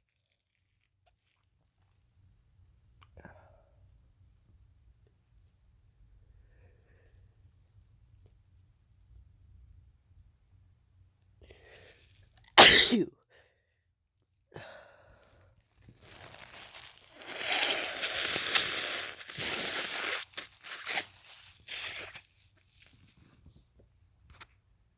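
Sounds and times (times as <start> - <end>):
man sneezing: 12.6 - 13.1.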